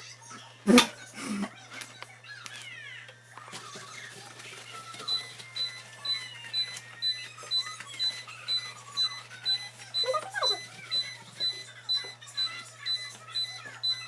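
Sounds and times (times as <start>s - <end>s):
fridge door alarm beeping: 3.6s - 14.0s.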